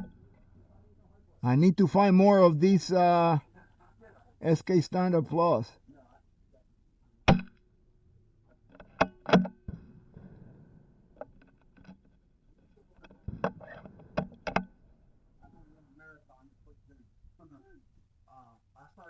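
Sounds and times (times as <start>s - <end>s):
rifle shot: 9.3s - 11.2s.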